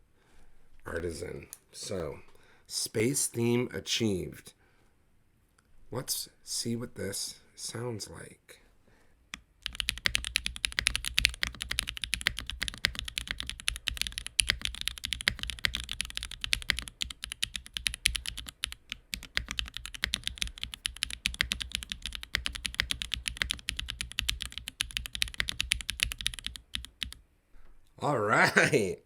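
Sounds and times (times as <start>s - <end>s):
fast mechanical keyboard typing: 9.6s - 27.2s.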